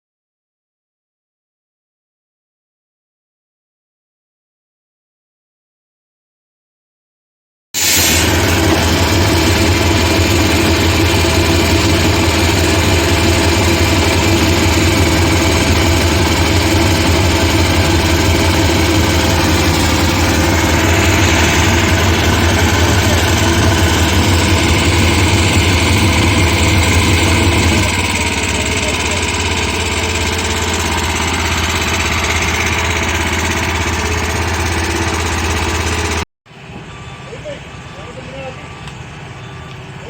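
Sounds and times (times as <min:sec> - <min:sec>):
engine humming: 0:08.0 - 0:40.0.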